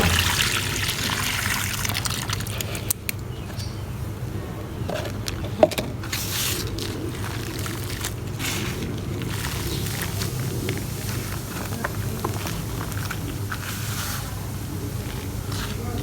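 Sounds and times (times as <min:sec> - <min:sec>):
small crackles: 0:06.0 - 0:16.0.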